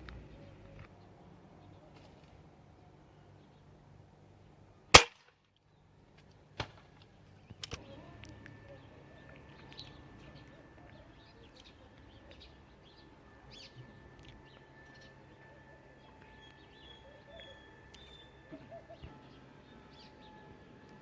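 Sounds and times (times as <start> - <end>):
low background hum: 0.0 - 21.0
faint bird chirps: 7.4 - 21.0.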